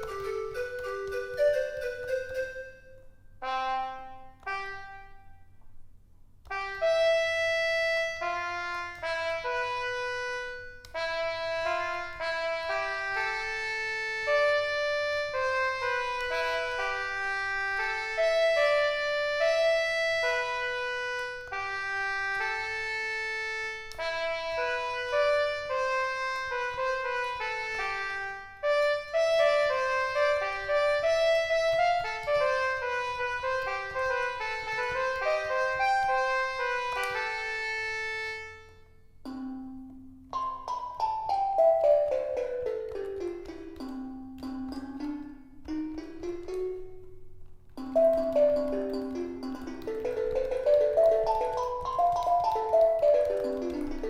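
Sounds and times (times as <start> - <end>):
keyboard brass-like melody: 0.0 - 5.6, 6.4 - 47.0, 47.8 - 54.0.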